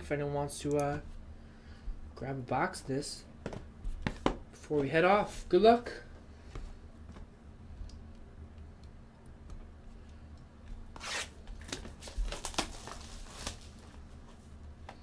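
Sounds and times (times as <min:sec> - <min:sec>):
packaging tearing and crinkling: 0:11.0 - 0:13.9.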